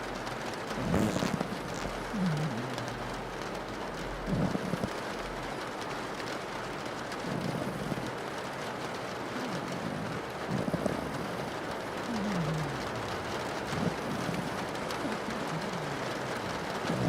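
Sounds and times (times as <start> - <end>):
rain on a window: 0.0 - 17.0
dog snoring: 0.7 - 3.0, 4.3 - 5.0, 7.2 - 8.1, 9.4 - 17.0.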